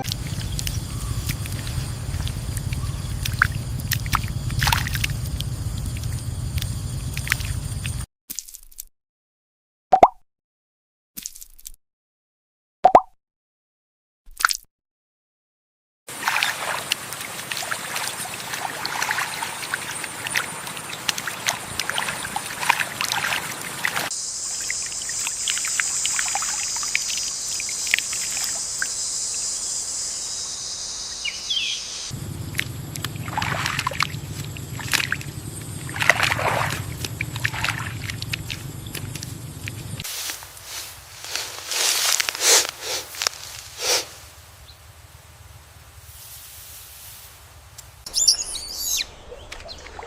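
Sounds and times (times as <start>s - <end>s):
low steady hum: 0.0s - 8.0s, 32.1s - 48.0s
water splashing: 0.0s - 8.0s, 16.1s - 29.4s, 32.1s - 44.3s, 49.2s - 50.0s
steady high hiss: 24.0s - 33.3s, 39.5s - 48.3s
rustling: 38.9s - 44.4s.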